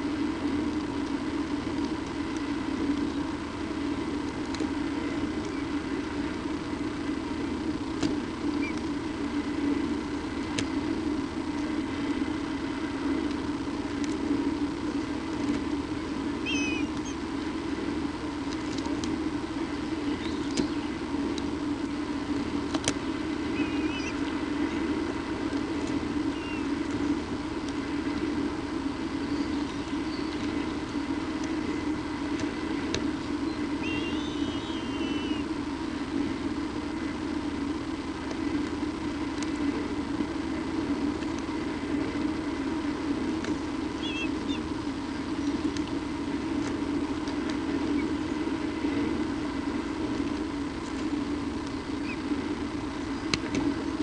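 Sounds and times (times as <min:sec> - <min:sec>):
steady low hum: 0:00.0 - 0:54.0
faint clicks: 0:00.6 - 0:03.1, 0:04.2 - 0:06.2, 0:10.3 - 0:10.8, 0:13.2 - 0:14.3, 0:18.4 - 0:19.2, 0:19.9 - 0:21.6, 0:22.6 - 0:24.8, 0:38.2 - 0:39.6, 0:53.3 - 0:53.7
high bird chirps: 0:16.4 - 0:17.2, 0:23.5 - 0:24.2, 0:26.3 - 0:26.7, 0:33.8 - 0:35.4, 0:44.0 - 0:44.6.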